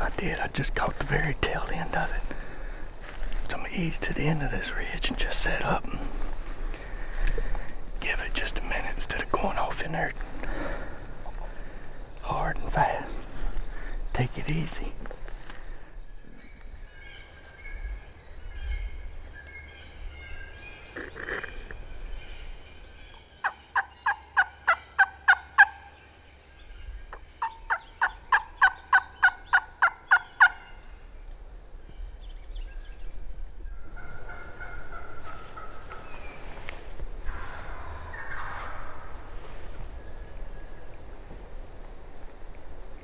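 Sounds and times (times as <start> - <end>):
wind: 0.0 - 43.0
faint songbird chirps: 6.6 - 41.4
turkey yelping: 23.4 - 25.9, 27.4 - 30.8, 33.9 - 36.0, 37.3 - 39.1.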